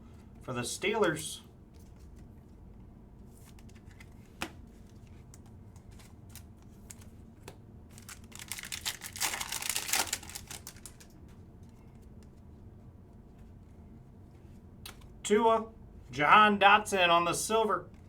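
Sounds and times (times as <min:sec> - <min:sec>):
wrapper crinkling and tearing: 0:07.9 - 0:11.2
cards clicking when handled: 0:14.9 - 0:15.1.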